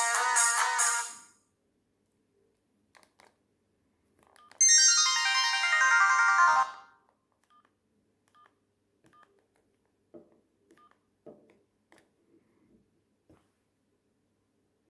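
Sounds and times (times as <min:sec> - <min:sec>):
phone ringtone: 0:04.6 - 0:06.9.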